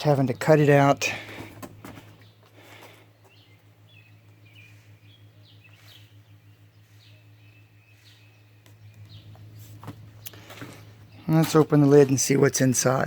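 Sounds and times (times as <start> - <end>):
steady low hum: 0.0 - 13.0
high bird chirps: 3.2 - 11.4.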